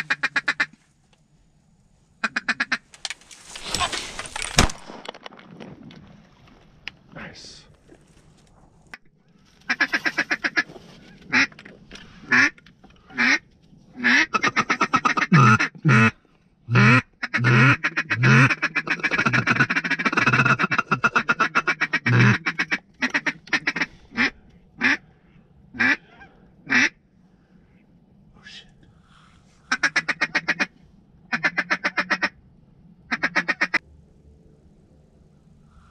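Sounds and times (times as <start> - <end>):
duck call quacking: 14.0 - 25.0, 25.8 - 26.0, 26.7 - 26.9, 29.7 - 30.7, 33.1 - 33.8.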